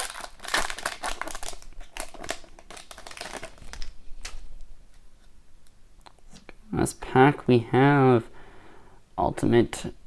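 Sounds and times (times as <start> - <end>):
cards rustling: 0.0 - 5.0
plastic wrapper crinkling: 0.0 - 5.0.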